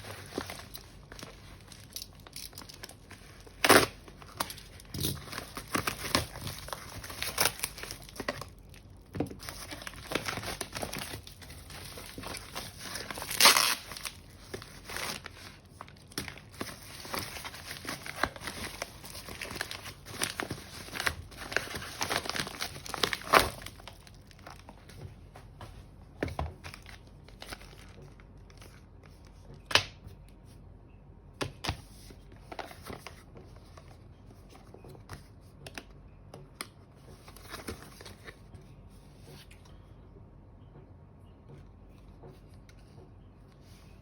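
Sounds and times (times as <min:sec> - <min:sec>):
packaging crinkling and tearing: 0:00.0 - 0:25.0, 0:26.6 - 0:28.9.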